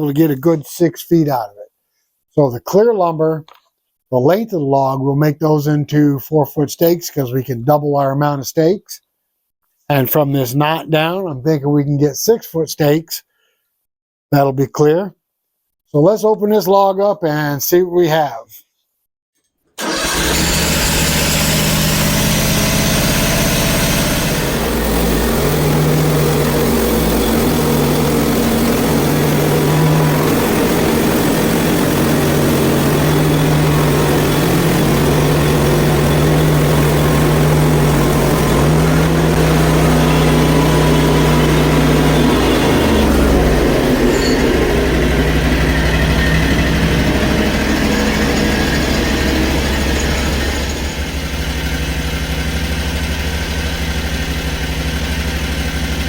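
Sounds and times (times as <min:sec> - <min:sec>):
gas engine under load: 0:19.8 - 0:56.0
band blade sawing log: 0:20.4 - 0:51.0.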